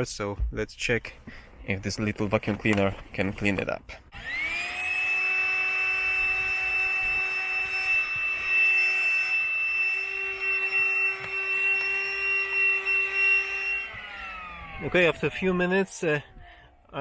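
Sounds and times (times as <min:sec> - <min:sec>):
handheld vacuum cleaner whine: 0:04.1 - 0:16.8.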